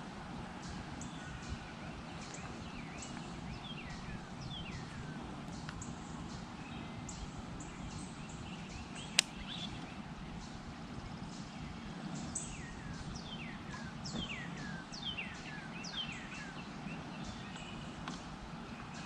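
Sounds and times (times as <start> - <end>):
steady low rush: 0.0 - 19.0
small birds chirping: 0.3 - 19.0
sharp click: 9.1 - 9.5.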